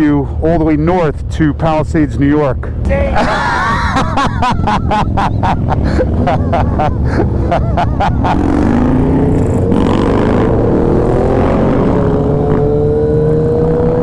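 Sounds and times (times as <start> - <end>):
wind rumble: 0.0 - 13.9
motorcycle engine accelerating: 2.8 - 14.0.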